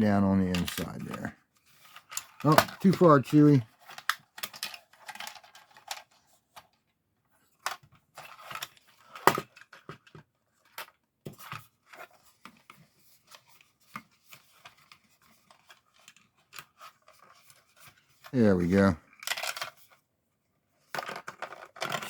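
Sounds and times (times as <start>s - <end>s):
plastic toy pieces clicking: 1.9s - 6.2s, 19.2s - 19.9s, 20.9s - 22.0s.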